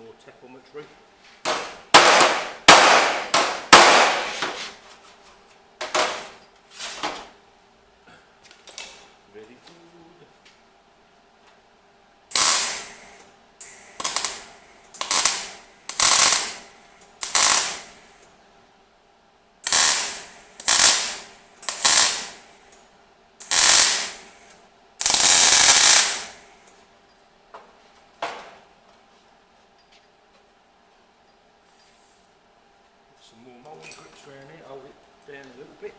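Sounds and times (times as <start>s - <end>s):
welder crackling: 12.3s - 13.0s, 13.6s - 18.0s, 19.6s - 22.5s, 23.4s - 24.3s, 25.0s - 26.4s.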